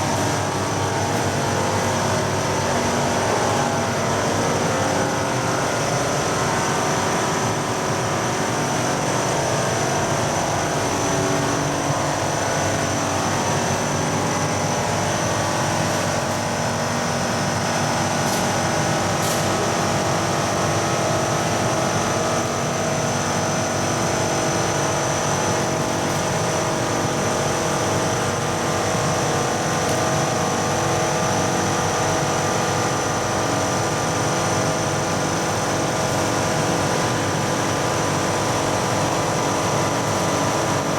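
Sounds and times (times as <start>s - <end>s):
machine droning hum: 0.0s - 40.9s.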